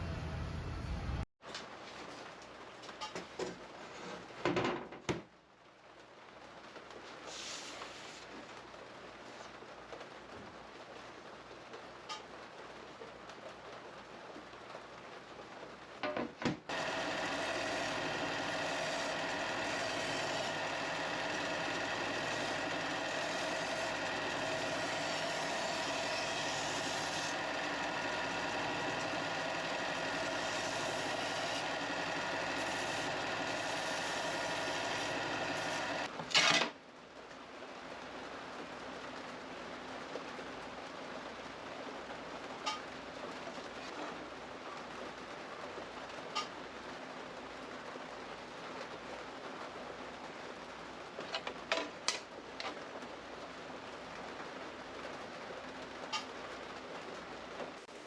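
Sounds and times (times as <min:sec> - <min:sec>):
angle grinder cutting steel: 0:16.7 - 0:36.1.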